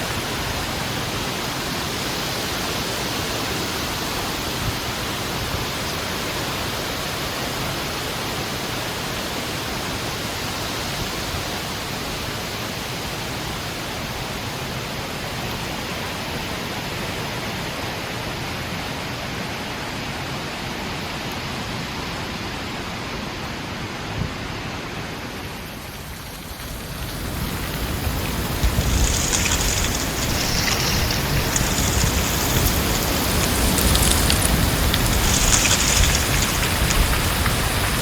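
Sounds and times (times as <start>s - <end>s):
heavy storm wind blowing: 23.8s - 38.0s.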